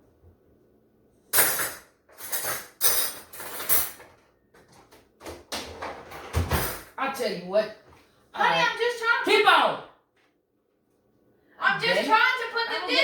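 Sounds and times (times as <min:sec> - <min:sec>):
dishes clattering: 0:01.4 - 0:04.2.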